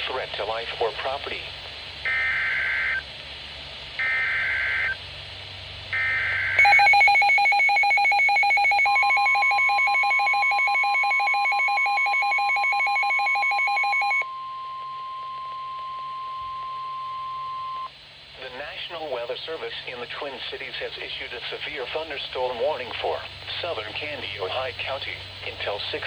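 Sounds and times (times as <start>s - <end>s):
steady warning alarm tone: 4.0s - 5.0s, 6.0s - 17.9s
data burst tones: 6.0s - 14.2s
fast electronic beeping alarm: 6.0s - 14.2s.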